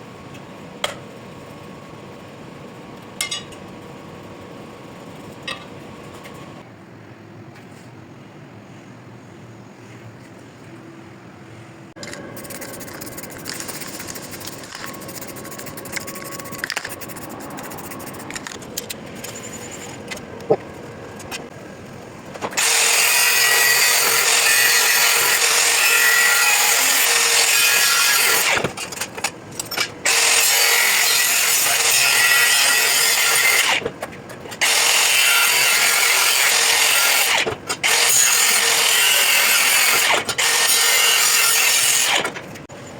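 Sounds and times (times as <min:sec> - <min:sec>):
rubbing and scraping: 0:12.4 - 0:18.4
power tool grinding metal: 0:22.5 - 0:28.6, 0:30.1 - 0:33.8, 0:34.6 - 0:42.3.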